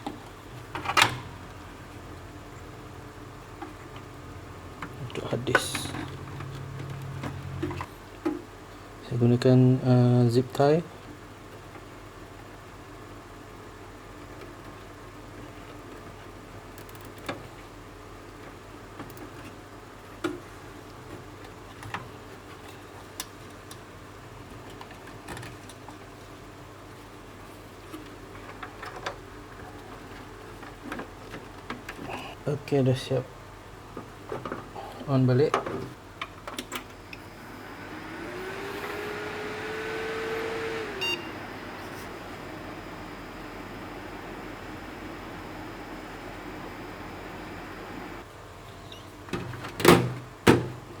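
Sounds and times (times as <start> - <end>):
computer fans and drives whining: 0.1 - 8.0, 36.4 - 48.3
steady low hum: 36.9 - 48.3
short computer beep: 41.0 - 41.4.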